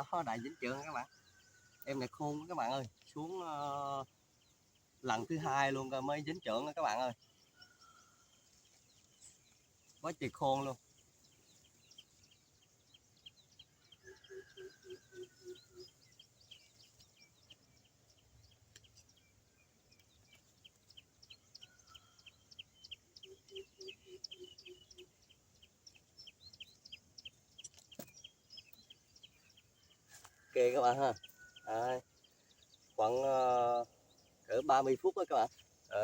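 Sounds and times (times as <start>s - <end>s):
bird deep hooting call: 14.0s - 16.0s.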